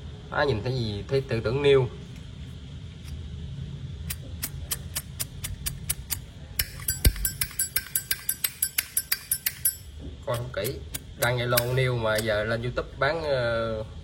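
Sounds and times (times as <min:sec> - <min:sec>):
lighter metallic clicks: 0:10.3 - 0:12.5.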